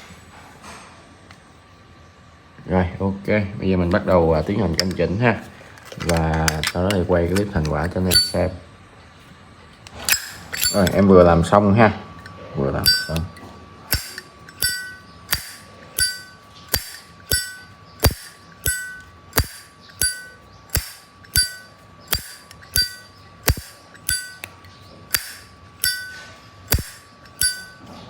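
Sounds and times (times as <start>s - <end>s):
lighter lid clicking open and shut: 13.9s - 27.7s.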